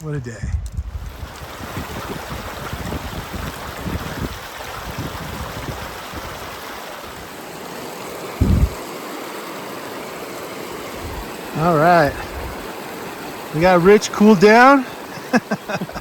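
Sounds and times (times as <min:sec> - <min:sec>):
stream rushing: 0:01.0 - 0:16.0
low rumbles: 0:08.4 - 0:08.8.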